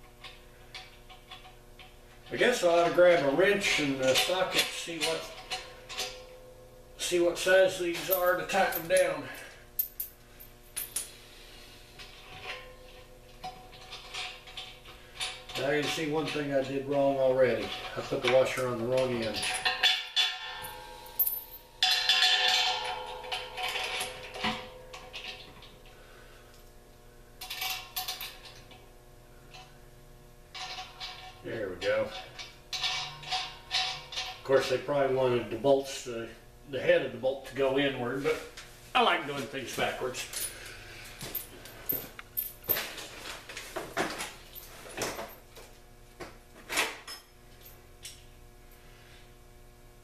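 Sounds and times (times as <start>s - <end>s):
faint steady hum: 0.0s - 50.0s
metal hardware clinking: 0.2s - 6.5s, 7.6s - 11.2s, 12.1s - 25.8s, 30.5s - 34.7s
metal tools knocking and clattering: 17.6s - 25.7s.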